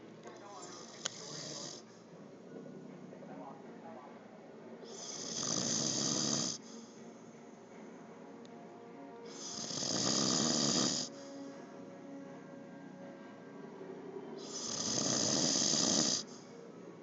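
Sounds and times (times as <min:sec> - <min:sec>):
man snoring: 0:00.8 - 0:01.9, 0:04.9 - 0:06.9, 0:09.3 - 0:11.5, 0:14.4 - 0:16.5.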